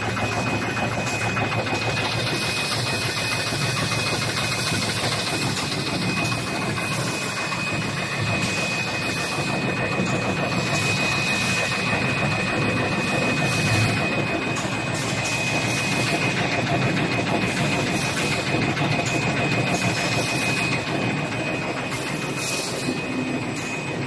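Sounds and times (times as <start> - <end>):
high-pitched machine whine: 0.0 - 24.0
packaging machine clatter and hum: 0.0 - 24.0.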